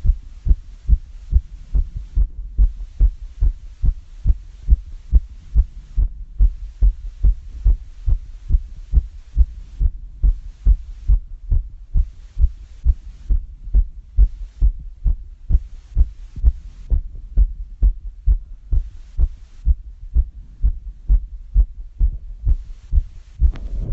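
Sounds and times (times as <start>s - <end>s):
fast heartbeat thumps: 0.0s - 23.9s.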